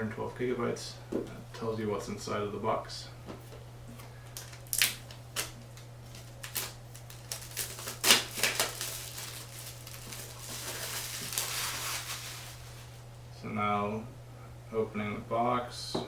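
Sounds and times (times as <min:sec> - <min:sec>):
low steady hum: 0:00.0 - 0:16.0
box wrapping tearing: 0:06.1 - 0:12.9.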